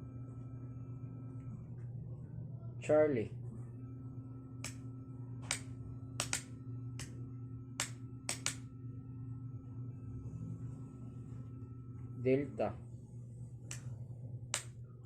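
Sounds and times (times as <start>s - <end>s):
steady low hum: 0.0s - 15.0s
signal light switch clicks: 7.8s - 8.6s.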